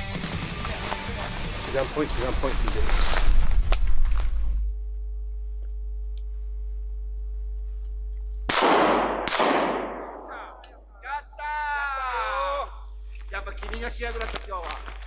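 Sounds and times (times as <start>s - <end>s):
steady droning tone: 0.0s - 8.5s, 10.3s - 15.0s
shotgun shots with echo: 8.5s - 10.5s.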